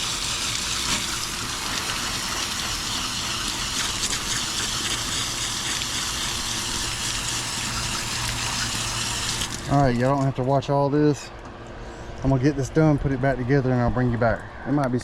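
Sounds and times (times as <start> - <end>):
water spraying from hose: 0.0 - 10.0.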